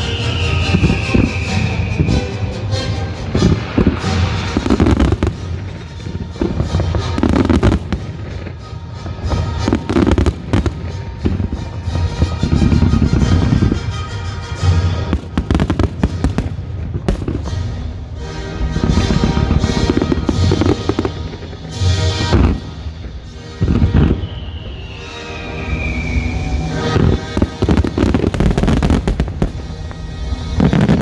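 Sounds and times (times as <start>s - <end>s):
loud music: 0.0s - 24.1s, 26.5s - 31.0s
fireworks bangs and crackles: 0.0s - 31.0s
heavy fireworks booms: 0.0s - 31.0s.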